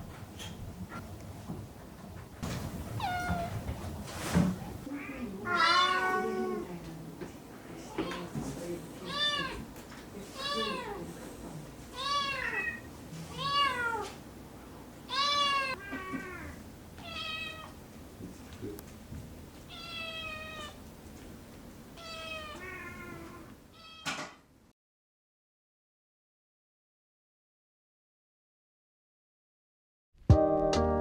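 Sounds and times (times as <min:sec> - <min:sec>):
cat meowing: 0:03.0 - 0:03.6, 0:04.9 - 0:06.7, 0:09.0 - 0:09.7, 0:10.4 - 0:11.0, 0:11.9 - 0:14.2, 0:15.1 - 0:17.8, 0:19.7 - 0:20.8, 0:22.0 - 0:24.2.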